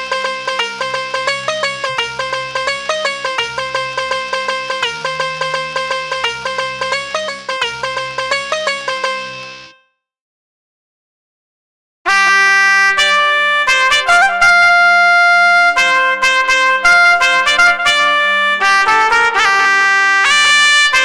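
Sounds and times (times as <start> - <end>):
held low synth note: 0.0 - 9.8
trumpet-like synth lead melody: 0.0 - 9.8, 12.1 - 21.0.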